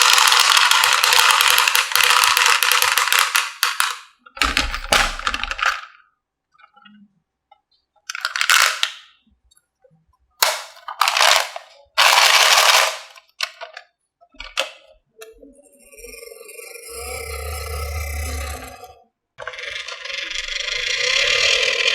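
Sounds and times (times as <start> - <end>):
marbles clacking against track: 0.0 - 6.0, 8.1 - 9.0, 10.4 - 13.8, 19.4 - 21.9
marbles rolling on wooden track: 0.0 - 6.0, 8.2 - 9.0, 10.4 - 13.7, 19.4 - 21.9
faint pitched tone: 15.2 - 19.0.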